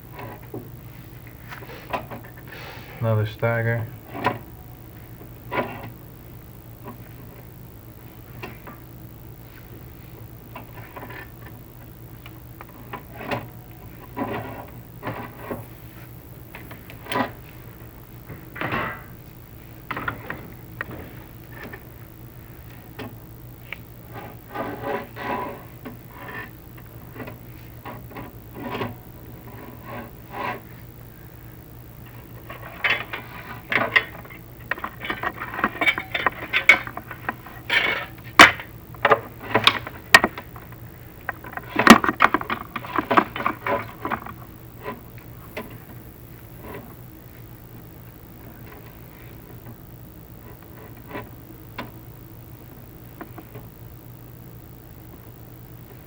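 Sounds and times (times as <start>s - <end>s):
steady low hum: 0.0s - 56.0s
camera scraping against flue tiles: 32.5s - 44.5s.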